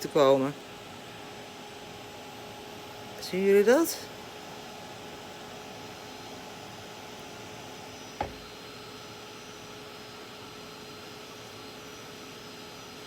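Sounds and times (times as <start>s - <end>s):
single knock: 8.2s - 8.5s.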